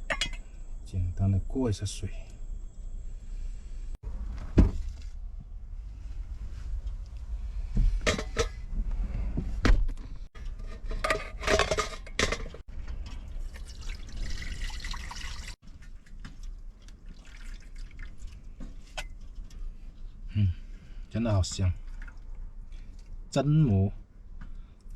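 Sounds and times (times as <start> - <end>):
pot and utensils clinking: 0.0 - 0.4, 10.8 - 12.6
water splashing and pouring: 13.0 - 18.6, 21.8 - 23.3.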